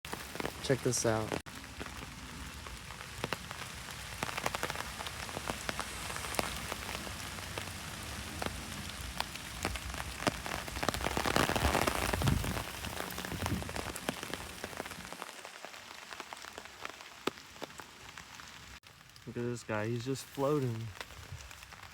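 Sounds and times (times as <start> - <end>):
rain falling: 0.0 - 21.9
raindrops ticking: 0.1 - 21.9.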